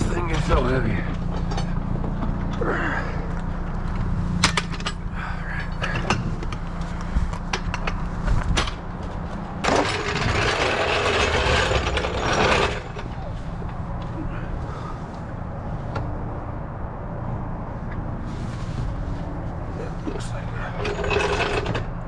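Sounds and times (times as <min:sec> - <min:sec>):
steady low rumble: 0:00.0 - 0:20.8
metal floor jack clanking: 0:09.6 - 0:13.2, 0:20.8 - 0:22.0
metal jack scraping rattle: 0:09.6 - 0:13.3, 0:20.6 - 0:22.0.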